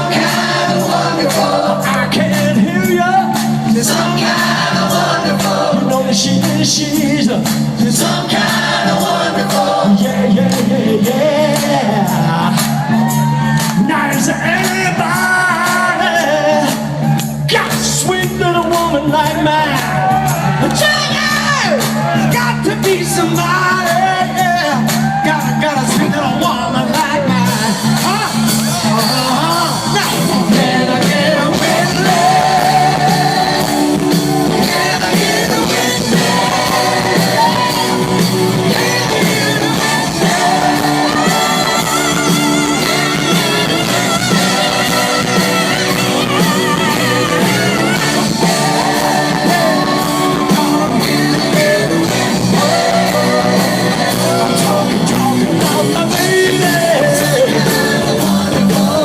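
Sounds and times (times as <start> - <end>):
live rock band playing: 0.0 - 59.0
person singing and shouting: 20.6 - 59.0.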